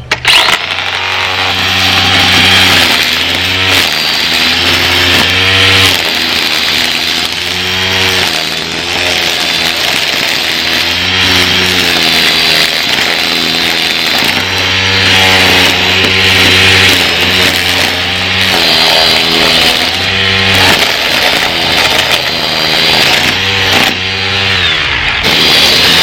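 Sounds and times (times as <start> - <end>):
string trimmer cutting grass: 0.0 - 26.0.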